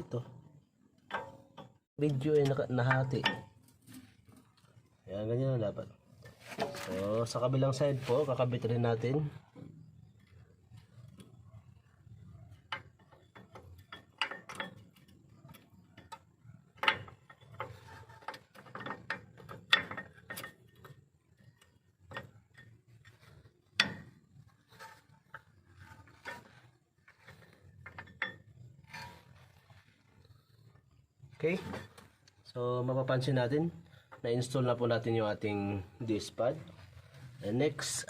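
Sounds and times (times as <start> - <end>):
sharp metal knocks: 1.1 - 3.6.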